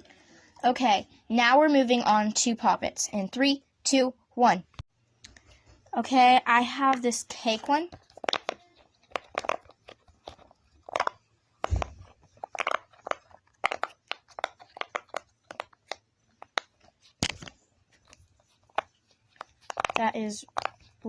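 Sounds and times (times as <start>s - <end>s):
fidget toy bubbles popping: 6.9s - 17.4s, 18.7s - 21.0s.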